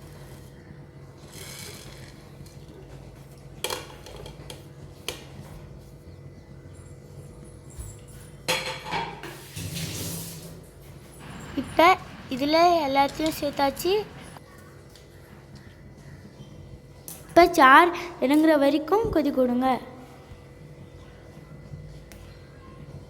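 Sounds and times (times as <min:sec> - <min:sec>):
steady low hum: 0:09.6 - 0:23.0.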